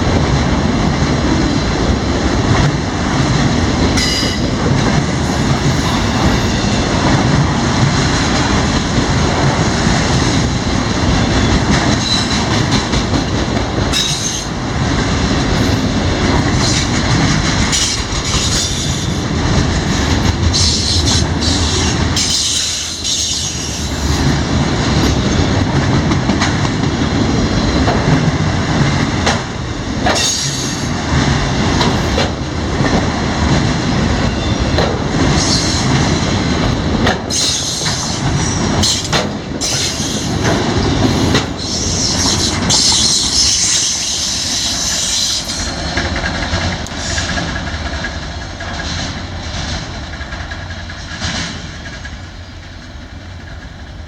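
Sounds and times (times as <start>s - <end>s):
train wheels rumbling: 0.0s - 54.0s
wheels clicking over rail joints: 0.0s - 54.0s
high wheel squeal: 5.2s - 6.9s, 37.3s - 45.9s.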